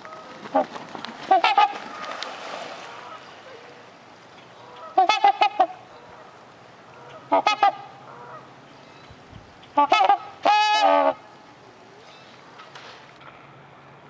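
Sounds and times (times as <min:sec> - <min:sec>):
swans honking: 0:00.0 - 0:02.2, 0:02.8 - 0:03.8, 0:04.5 - 0:08.8, 0:09.6 - 0:11.4.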